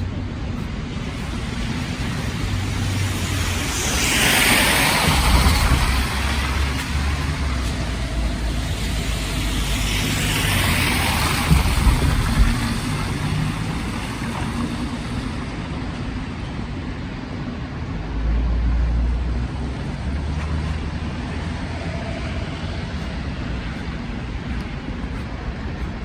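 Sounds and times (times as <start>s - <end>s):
low engine rumble: 0.0s - 26.0s
passing vehicles: 0.0s - 26.0s.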